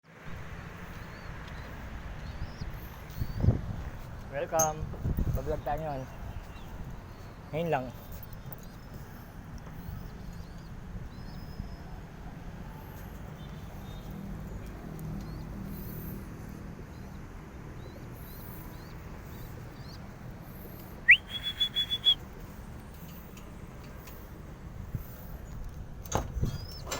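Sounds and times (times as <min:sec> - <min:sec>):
faint bird chirps: 0:17.8 - 0:22.2
loud rising whistle: 0:21.1 - 0:22.2.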